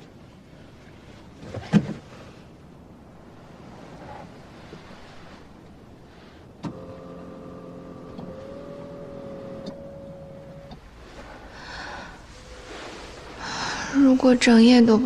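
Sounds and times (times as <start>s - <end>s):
power window switch click: 6.6s - 10.8s
power window motor whining: 6.6s - 13.6s.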